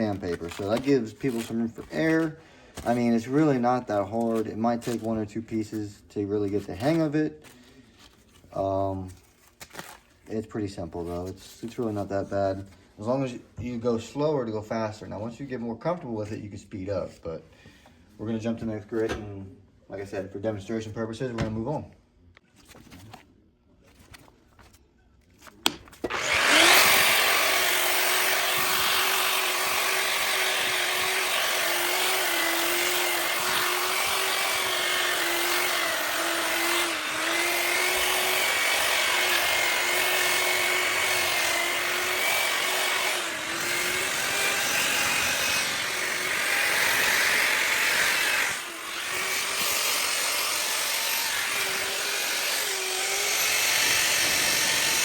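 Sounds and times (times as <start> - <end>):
grinder sanding metal: 26.1 - 55.0.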